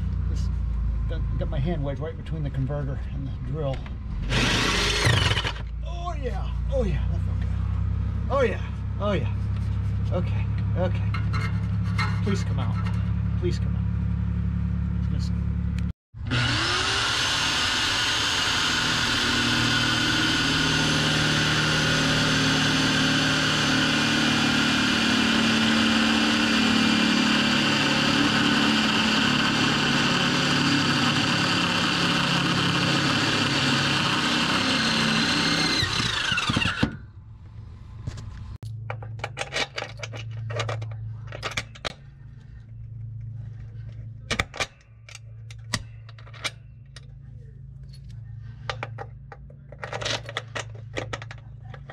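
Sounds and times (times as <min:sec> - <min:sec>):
drill boring through steel: 0:04.2 - 0:05.6, 0:16.2 - 0:37.0
light metallic clicks and rattles: 0:38.6 - 0:42.1.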